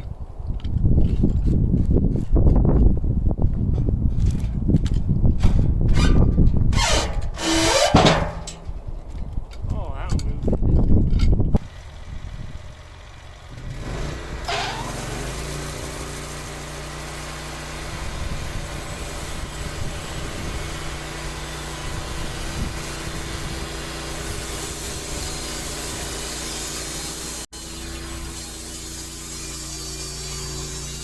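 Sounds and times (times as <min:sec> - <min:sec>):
sawmill gasoline engine running: 0:11.6 - 0:31.0.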